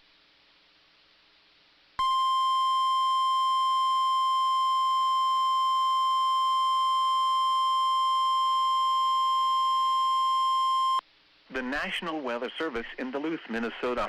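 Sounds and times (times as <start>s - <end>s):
steady warning alarm tone: 2.0s - 11.0s.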